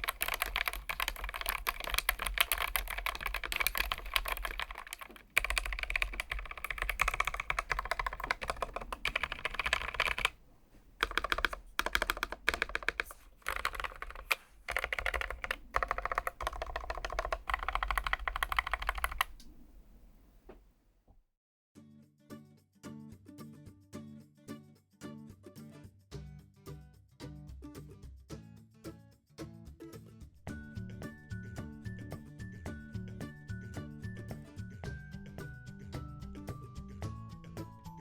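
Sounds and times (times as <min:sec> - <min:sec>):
mechanical keyboard key clacks: 0:00.0 - 0:10.4, 0:11.0 - 0:19.5.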